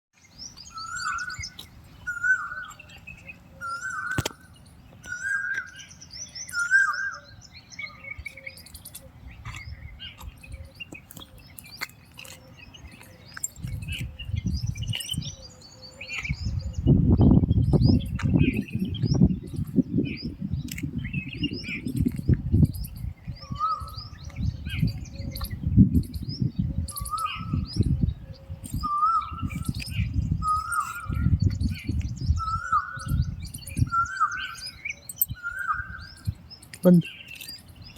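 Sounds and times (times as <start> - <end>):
birds chirping and calling: 0.2 - 37.9.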